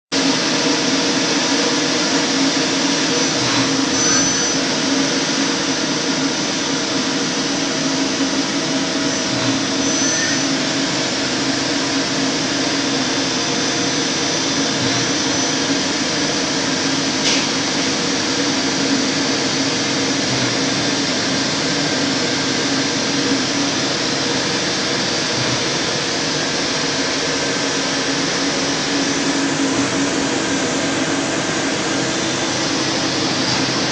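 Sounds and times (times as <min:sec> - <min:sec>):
lathe whirring: 0:00.2 - 0:33.9
short high squeals: 0:03.8 - 0:04.7, 0:09.6 - 0:10.6.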